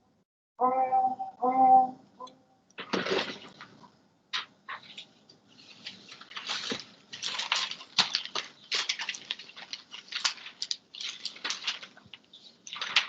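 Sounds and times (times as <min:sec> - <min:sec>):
scratchy rustling and crackling: 0:04.4 - 0:13.0.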